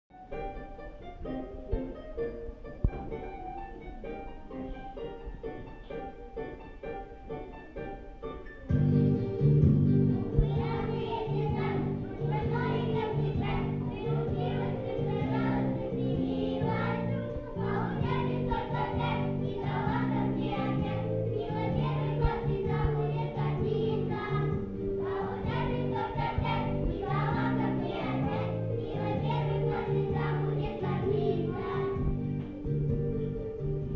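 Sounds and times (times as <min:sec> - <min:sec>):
held low accompaniment notes: 0:08.7 - 0:33.9
voices singing: 0:10.0 - 0:32.6.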